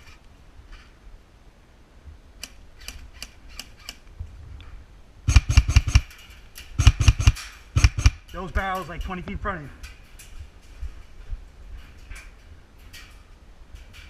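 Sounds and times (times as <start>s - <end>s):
airsoft guns firing: 5.3s - 6.2s, 6.8s - 8.3s.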